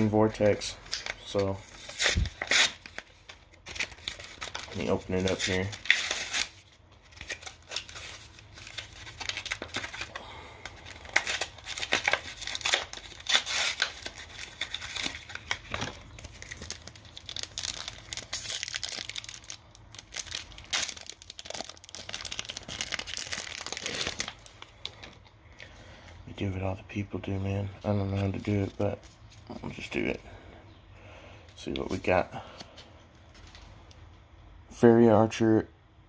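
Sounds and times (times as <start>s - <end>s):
foil wrapper tearing and crinkling: 0.0s - 25.2s.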